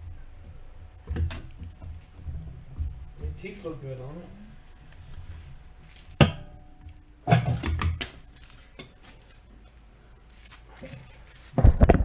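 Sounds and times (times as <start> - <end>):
metal tools clinking and knocking: 7.3 - 8.9.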